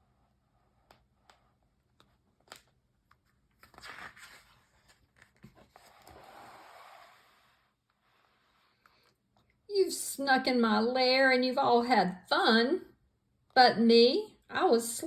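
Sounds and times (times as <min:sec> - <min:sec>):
paper page rustling: 0:01.9 - 0:07.2.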